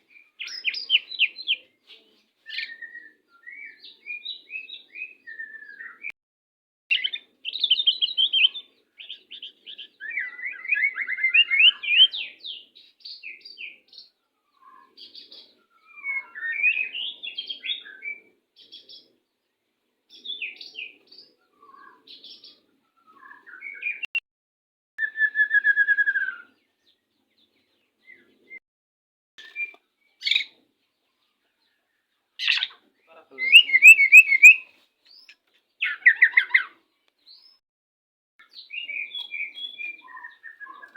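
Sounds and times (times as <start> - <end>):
birds singing whistled phrases: 0.1 - 1.7, 2.5 - 6.2, 6.9 - 19.1, 20.1 - 24.1, 25.0 - 26.7, 29.4 - 30.6, 32.4 - 37.6, 38.4 - 40.9.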